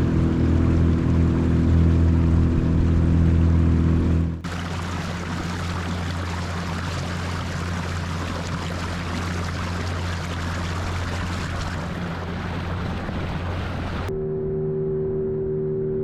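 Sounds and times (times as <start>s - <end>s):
boat motor running: 0.0s - 15.9s
wind and water noise: 4.1s - 14.1s
music of sustained ringing tones: 14.1s - 16.0s.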